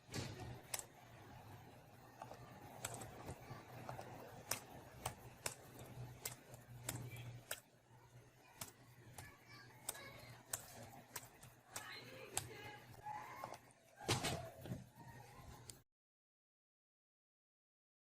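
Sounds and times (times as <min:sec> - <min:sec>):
computer keyboard keystrokes: 0:02.2 - 0:07.7, 0:08.6 - 0:12.6.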